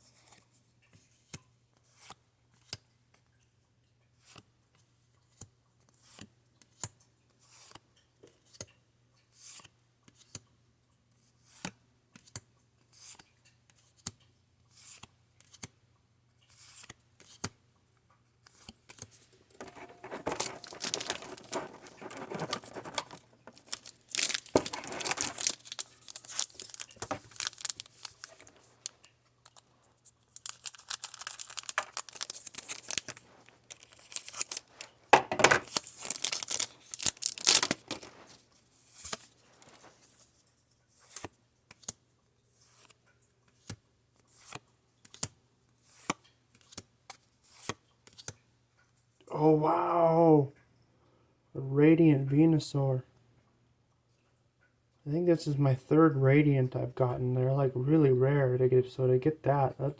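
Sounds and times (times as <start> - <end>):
plastic wrapper crinkling and tearing: 19.5 - 38.4.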